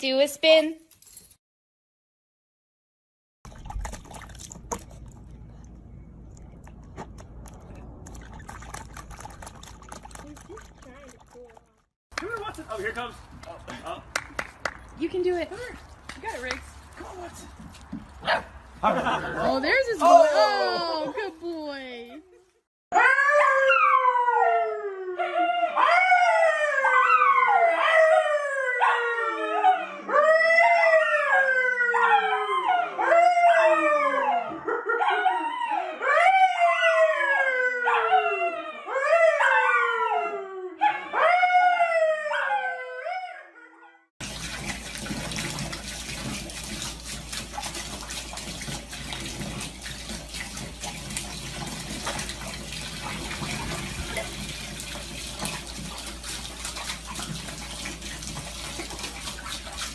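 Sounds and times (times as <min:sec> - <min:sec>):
dog howling: 0:22.9 - 0:44.0
running water rushing: 0:44.2 - 0:59.9.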